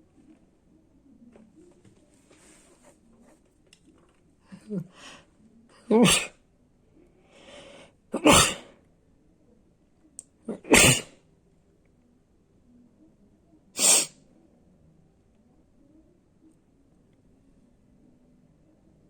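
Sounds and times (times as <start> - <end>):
noisy breath in: 4.9 - 5.3, 7.2 - 8.0, 13.8 - 14.1
person sneezing: 5.9 - 6.4, 8.2 - 8.7, 10.5 - 11.1, 13.8 - 14.1.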